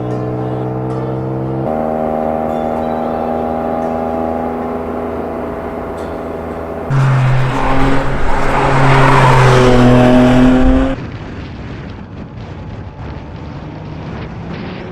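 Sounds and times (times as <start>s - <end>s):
car engine at high revs: 0.0s - 11.2s, 12.4s - 14.9s
tyre and wind noise rushing: 6.9s - 14.9s.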